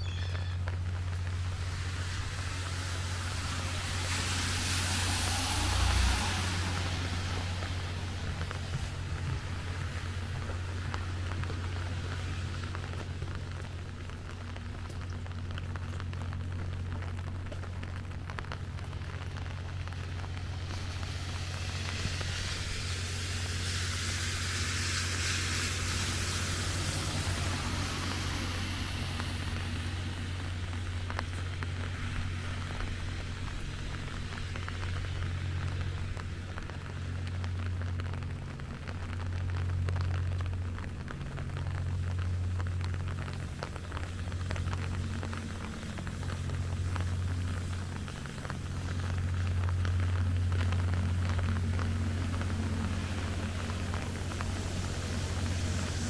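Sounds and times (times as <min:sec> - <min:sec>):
rain on street: 0:00.0 - 0:56.0
hiss: 0:01.4 - 0:07.5, 0:20.6 - 0:29.7, 0:52.9 - 0:56.0.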